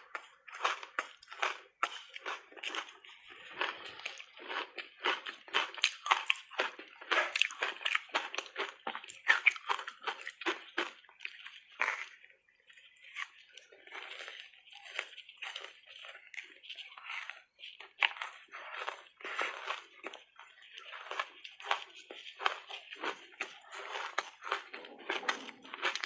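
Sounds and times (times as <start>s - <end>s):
ice crunching while chewed: 0.0s - 26.0s
wet chewing: 0.0s - 26.0s.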